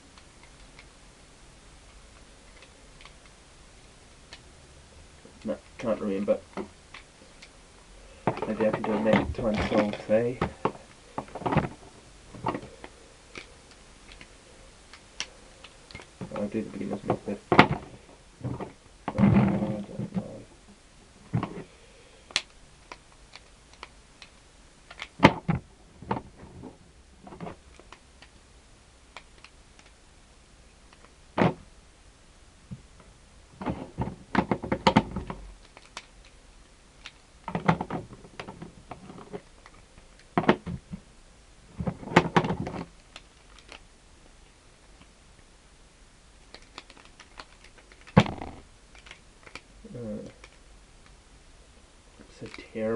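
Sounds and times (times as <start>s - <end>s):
plastic puzzle tiles clacking: 34.4s - 36.3s, 42.0s - 43.8s, 46.4s - 49.6s.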